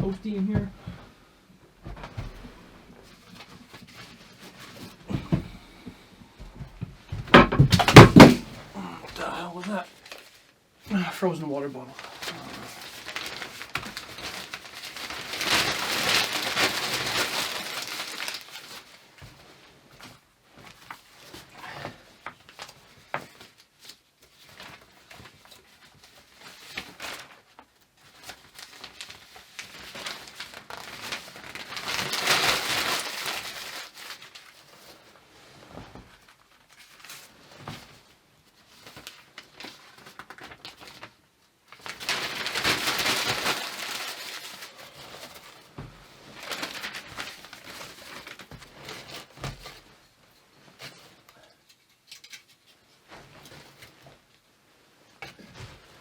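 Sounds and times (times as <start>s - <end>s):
paper being crumpled: 7.8s - 10.6s, 11.9s - 21.5s, 22.3s - 35.2s, 36.2s - 52.8s
clicks and knocks of handling: 50.8s - 52.8s.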